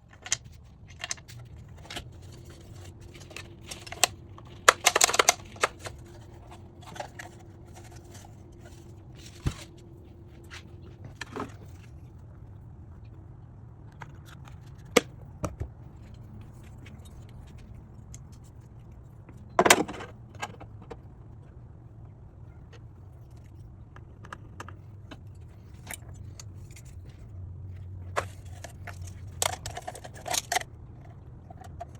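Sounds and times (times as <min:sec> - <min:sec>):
plastic parts clicking and knocking: 0:00.0 - 0:09.8, 0:19.3 - 0:21.1, 0:28.1 - 0:30.7
steady low hum: 0:00.0 - 0:31.9
packaging rustling: 0:00.2 - 0:09.8.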